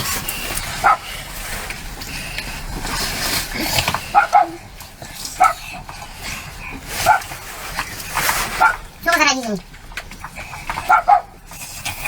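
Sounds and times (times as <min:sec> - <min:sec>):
dog barking: 0:00.8 - 0:01.1, 0:04.1 - 0:04.6, 0:05.4 - 0:05.6, 0:07.0 - 0:07.3, 0:08.6 - 0:08.9, 0:10.8 - 0:11.4.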